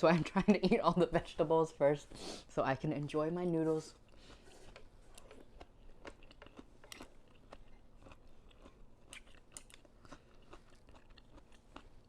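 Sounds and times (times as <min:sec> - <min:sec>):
person chewing: 0:04.0 - 0:12.0.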